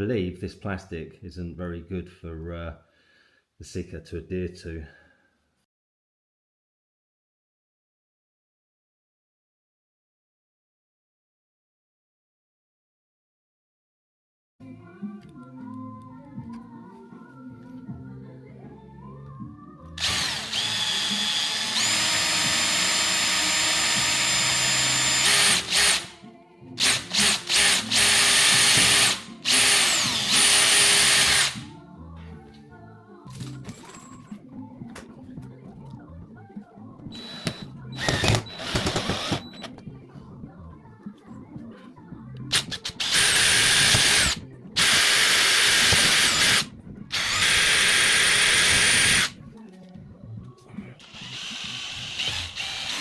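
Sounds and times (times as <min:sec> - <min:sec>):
power drill whining: 0:20.0 - 0:26.1, 0:26.8 - 0:31.6, 0:37.2 - 0:39.7, 0:42.6 - 0:49.3, 0:51.0 - 0:53.0.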